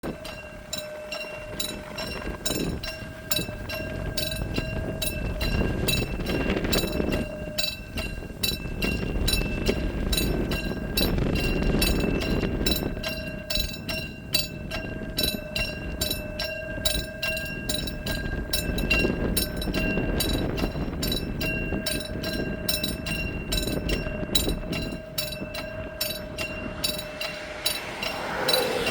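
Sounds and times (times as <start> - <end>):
railroad crossing bell ringing: 0.0 - 28.9
freight train rumbling past: 24.7 - 28.9.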